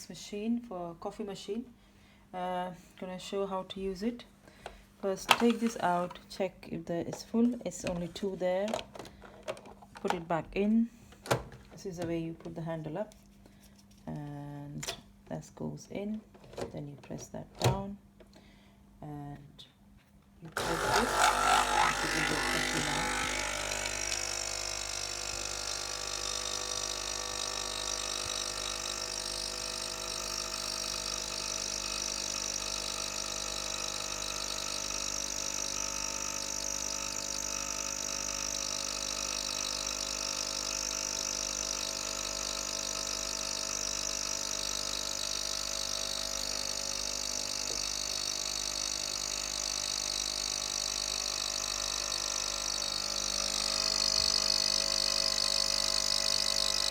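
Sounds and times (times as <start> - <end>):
coffee machine pump buzzing: 20.5 - 56.9
coffee running into cup: 20.6 - 34.8, 38.9 - 56.9.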